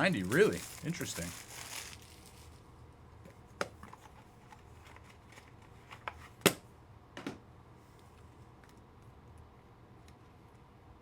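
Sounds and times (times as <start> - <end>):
trading cards being handled: 0.0 - 2.6.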